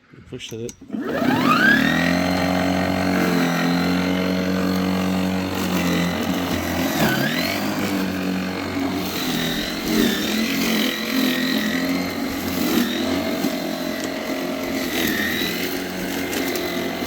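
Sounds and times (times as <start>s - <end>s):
lawnmower motor whine: 0.7s - 17.0s.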